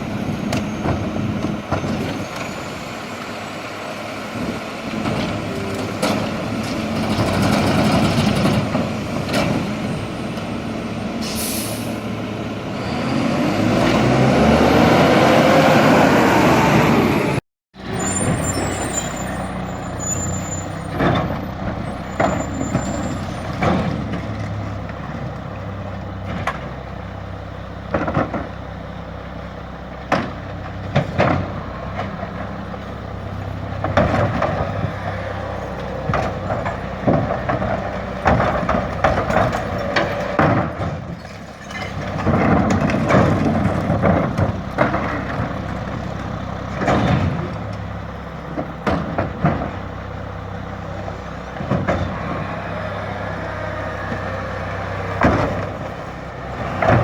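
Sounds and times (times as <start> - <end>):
diesel truck engine running: 0.0 - 57.0
truck engine revving: 0.0 - 57.0
air brake hiss: 11.2 - 12.0
trash bangs on truck: 30.0 - 32.5, 33.7 - 50.3, 51.5 - 52.9, 53.8 - 57.0.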